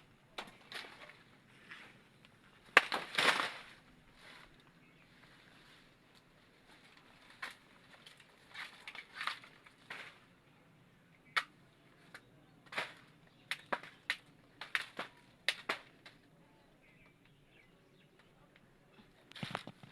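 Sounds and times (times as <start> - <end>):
blade chopping banana trunk: 2.8 - 3.7, 12.7 - 16.2.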